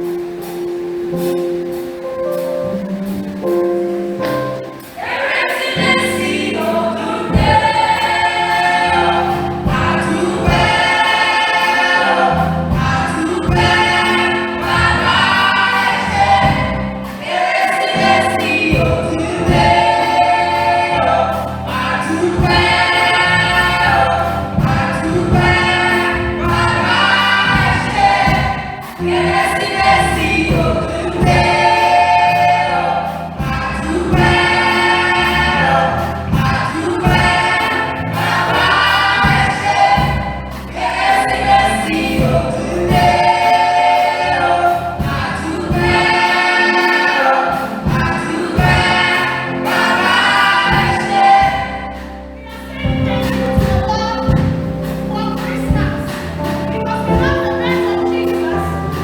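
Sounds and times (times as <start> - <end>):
choir singing gospel song: 0.0 - 59.0
instrumental accompaniment: 0.0 - 59.0.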